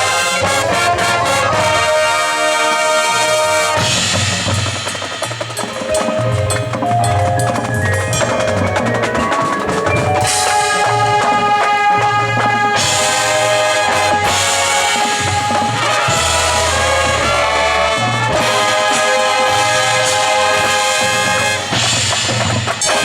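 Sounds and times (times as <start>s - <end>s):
drums: 0.0s - 23.0s
marching band playing: 0.0s - 23.0s
mallet percussion: 3.8s - 17.4s.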